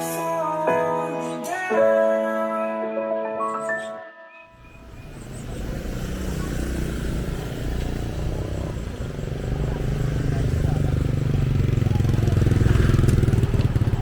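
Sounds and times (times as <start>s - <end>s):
vehicle engine rumbling: 4.6s - 14.0s.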